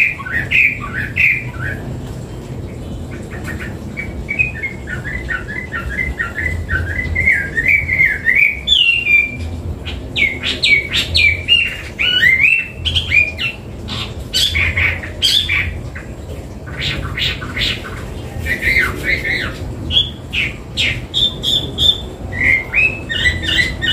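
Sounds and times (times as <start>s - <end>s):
bird singing whistled notes: 4.0s - 9.4s, 18.5s - 23.9s.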